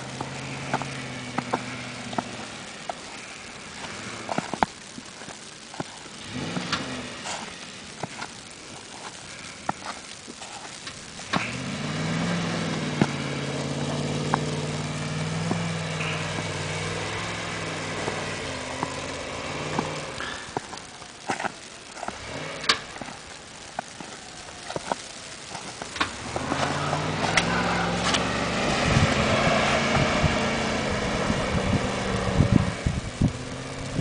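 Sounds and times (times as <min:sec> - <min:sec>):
vehicle engine running: 0:00.0 - 0:34.0
sharp clicks and knocks: 0:19.7 - 0:28.3.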